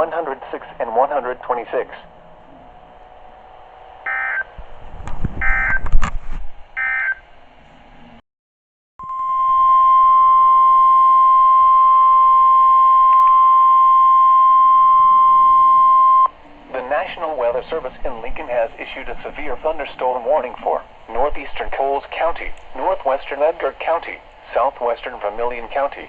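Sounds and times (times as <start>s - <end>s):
loud steady alarm tone: 4.0s - 4.6s.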